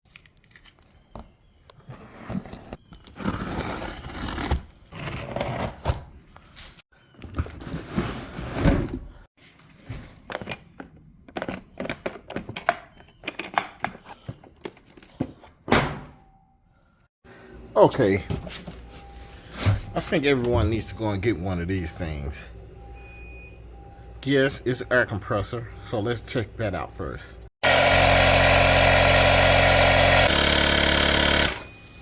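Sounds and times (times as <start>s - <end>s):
clicks and knocks of handling: 10.2s - 15.4s.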